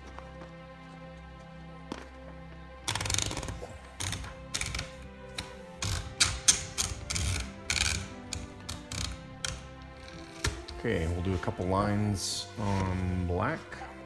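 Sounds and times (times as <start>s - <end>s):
typewriter ratchet clicking: 2.9s - 10.6s.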